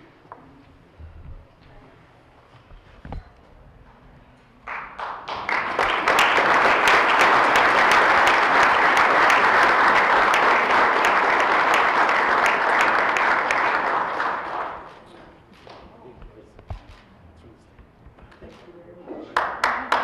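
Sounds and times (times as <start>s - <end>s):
audience applauding: 4.6s - 15.1s, 19.3s - 20.0s.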